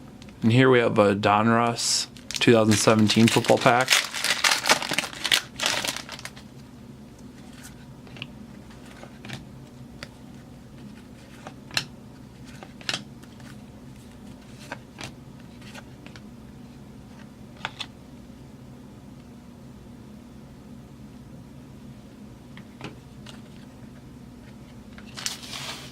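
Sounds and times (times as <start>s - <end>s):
steady low hum: 0.0s - 25.9s
card wrapper crinkling and tearing: 2.1s - 6.4s, 25.0s - 25.9s.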